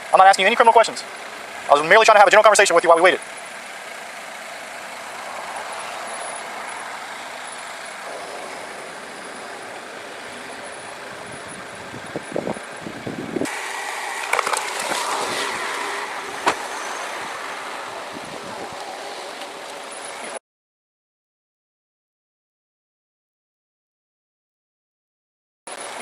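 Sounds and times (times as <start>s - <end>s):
road traffic passing: 0.0s - 20.4s, 25.7s - 26.0s.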